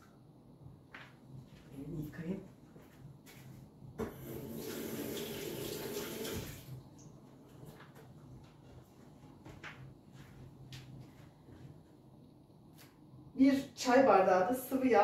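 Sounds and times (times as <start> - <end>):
tap running over washing hands: 4.0 - 6.6.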